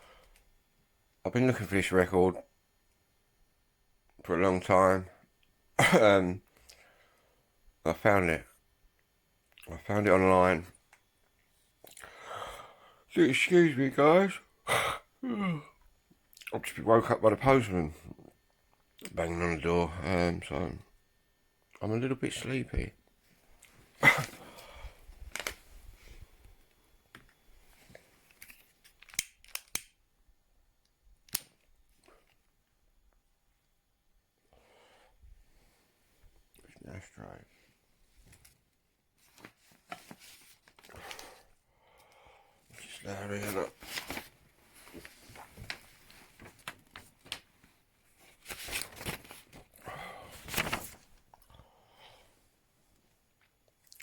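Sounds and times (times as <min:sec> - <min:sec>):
packaging rustling: 0:24.0 - 0:25.8, 0:43.4 - 0:51.3
packaging clicks and snaps: 0:28.3 - 0:30.0.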